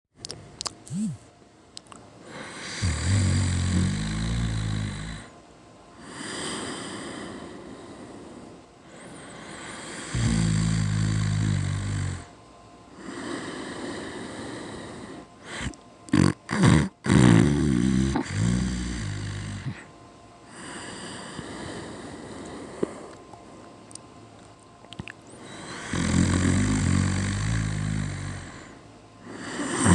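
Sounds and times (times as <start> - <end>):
person snoring: 0.9 - 1.2, 2.3 - 5.3, 9.0 - 12.3, 13.0 - 19.9, 25.4 - 29.9
breathy breath: 6.0 - 10.3, 13.0 - 15.8, 20.5 - 23.7, 25.3 - 26.1, 28.0 - 29.9
short snorts: 15.5 - 19.9, 29.4 - 29.9.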